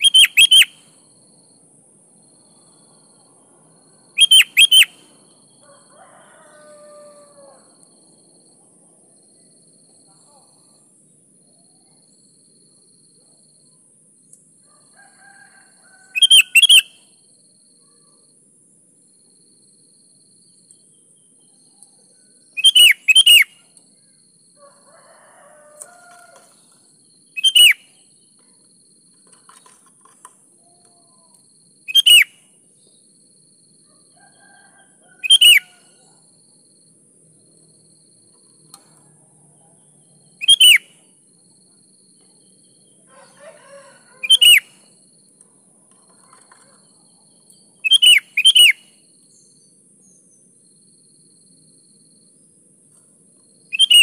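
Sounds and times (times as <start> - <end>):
soft bird chirps: 4.2 - 5.2, 20.6 - 24.2, 25.8 - 29.9, 45.9 - 50.5, 53.7 - 54.0
bird calling falling notes: 27.4 - 27.8.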